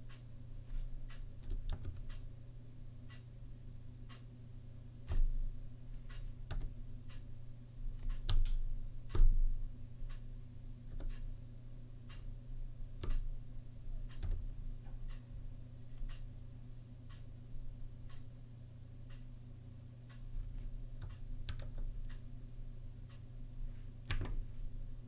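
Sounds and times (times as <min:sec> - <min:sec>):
steady low hum: 0:00.0 - 0:25.0
keyboard keys clicking: 0:01.4 - 0:02.2, 0:08.1 - 0:09.4, 0:14.2 - 0:14.5, 0:20.4 - 0:21.9, 0:24.1 - 0:24.5.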